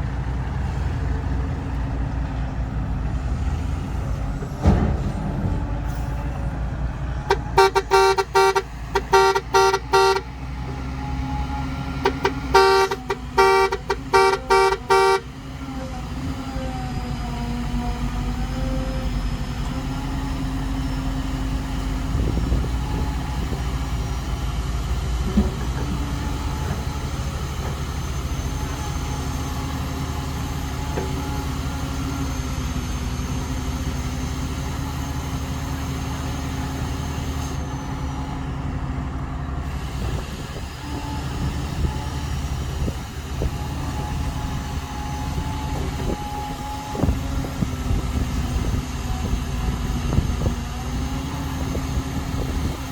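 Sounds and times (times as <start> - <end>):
diesel engines droning: 0.0 - 52.9
short horn toots: 7.3 - 10.3, 12.0 - 15.3.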